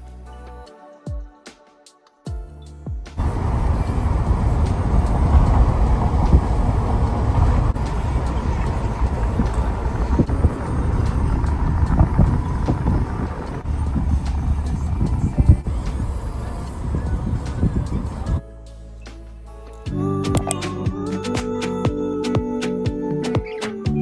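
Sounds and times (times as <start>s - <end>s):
car road noise rumble: 3.2s - 18.4s.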